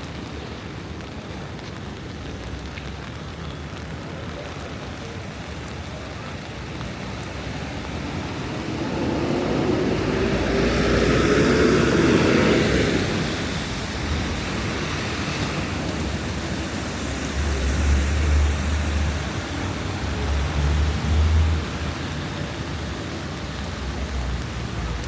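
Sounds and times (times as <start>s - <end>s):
vehicle passing on wet street: 0.0s - 25.0s
deep low rumble: 7.3s - 13.9s.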